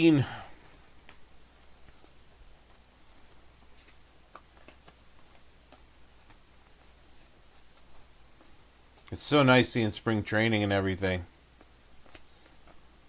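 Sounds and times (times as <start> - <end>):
trading cards being flipped: 0.6 - 9.2, 11.6 - 12.9.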